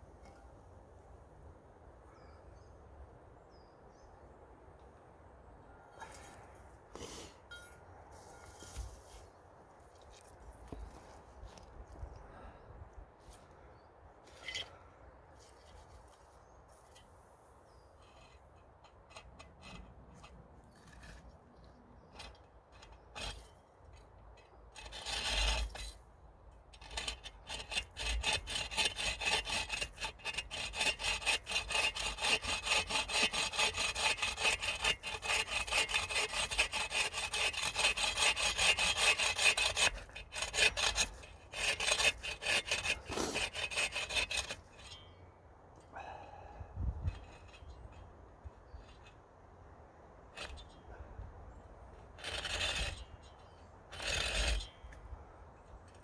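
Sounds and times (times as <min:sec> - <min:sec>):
hand saw cutting wood: 0:22.0 - 0:24.1, 0:24.7 - 0:26.0, 0:26.8 - 0:45.0, 0:52.0 - 0:55.0.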